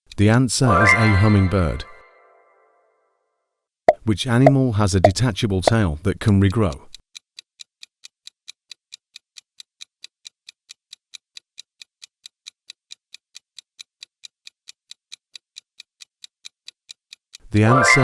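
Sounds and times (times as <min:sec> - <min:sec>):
ticking clock: 0:03.9 - 0:18.0.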